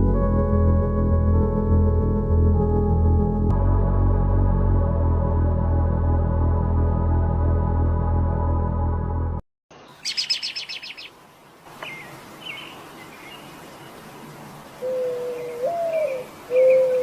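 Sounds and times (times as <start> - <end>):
music: 0.0 - 9.4
single melody line: 0.0 - 9.4
birds chirping: 9.7 - 14.1, 14.8 - 17.0.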